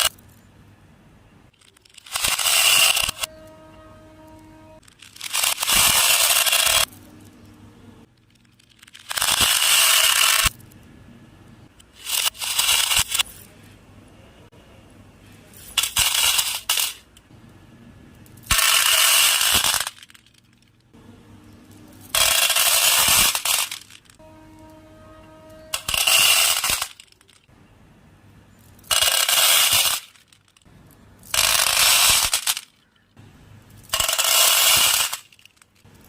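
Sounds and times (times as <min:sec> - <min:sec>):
beads pouring and rattling: 0:01.6 - 0:03.3, 0:04.8 - 0:06.9, 0:08.3 - 0:10.7, 0:18.3 - 0:20.8, 0:22.0 - 0:24.2, 0:25.7 - 0:27.4, 0:28.6 - 0:32.6, 0:33.7 - 0:35.8.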